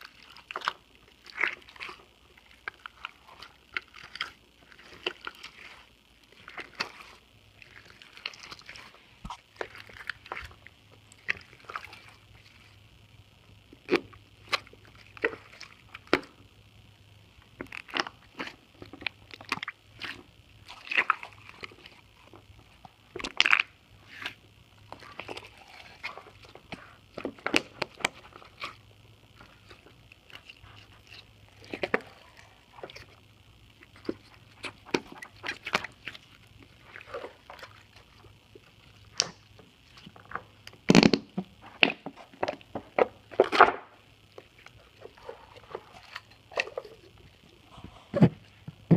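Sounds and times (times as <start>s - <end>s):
slime squelching: 0.0s - 16.6s, 17.2s - 48.9s.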